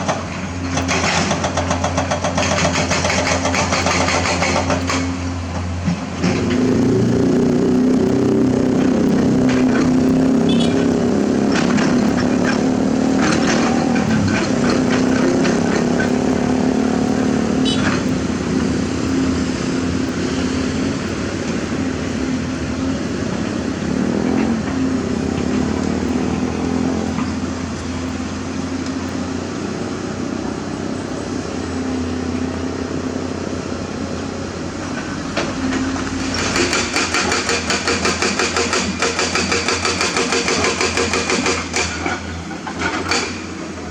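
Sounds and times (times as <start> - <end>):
excavator diesel engine running: 0.0 - 43.9
fast even hammering: 0.8 - 5.2, 6.2 - 28.3, 35.2 - 42.1.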